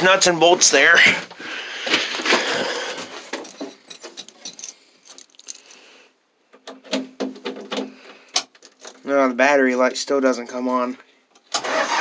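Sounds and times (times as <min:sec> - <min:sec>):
keys jangling: 0:03.4 - 0:05.8.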